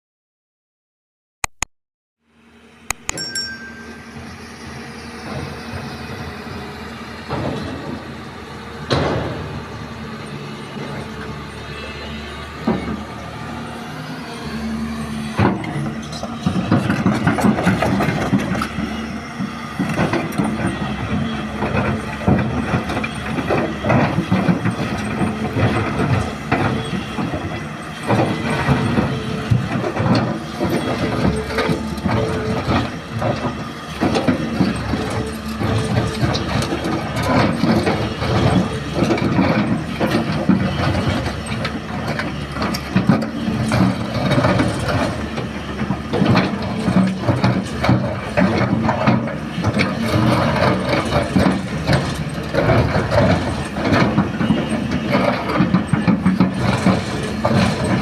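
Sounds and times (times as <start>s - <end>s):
excavator diesel engine running: 2.3s - 58.0s
sharp metal clanks: 2.9s - 4.4s.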